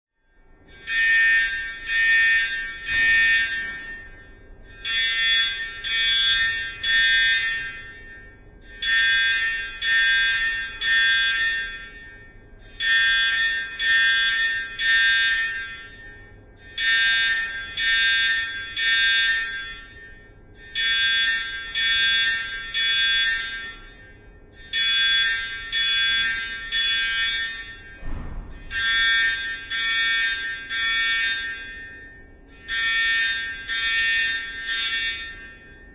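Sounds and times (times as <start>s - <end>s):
fire alarm ringing: 0.2s - 35.9s
brief thump: 28.0s - 28.6s.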